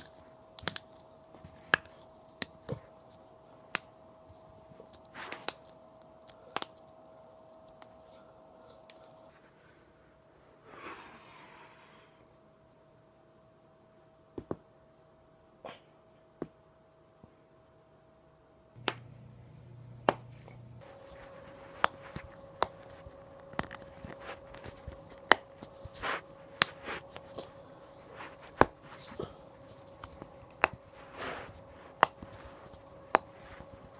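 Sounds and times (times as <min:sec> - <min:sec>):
faint steady hum: 0:00.0 - 0:33.9
rustling: 0:20.2 - 0:33.9.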